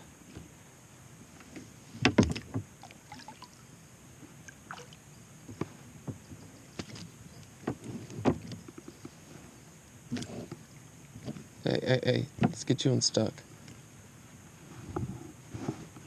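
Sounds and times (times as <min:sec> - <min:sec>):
knocks against kayak hull: 0:02.0 - 0:02.7, 0:07.6 - 0:09.0, 0:12.4 - 0:12.6.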